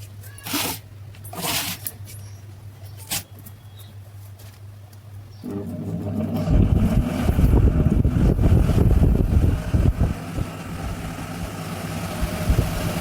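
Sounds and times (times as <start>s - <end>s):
electric fan motor hum: 5.4s - 13.0s
rushing air from fan: 5.9s - 13.0s.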